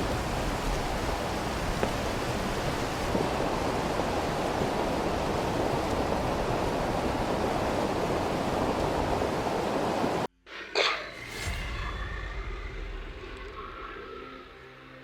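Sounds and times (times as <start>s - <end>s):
floodwater rushing: 0.0s - 10.3s.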